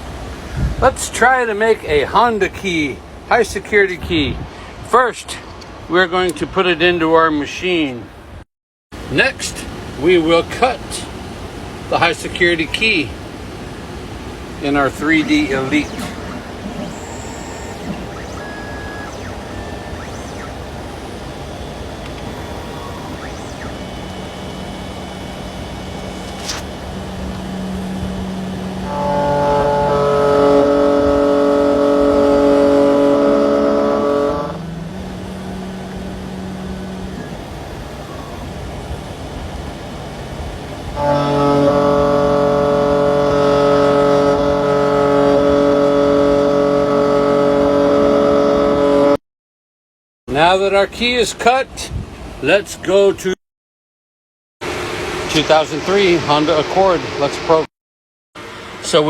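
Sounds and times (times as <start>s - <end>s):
low hum: 14.5s - 45.6s
key-cutting machine motor whine: 15.0s - 29.7s, 34.0s - 40.2s.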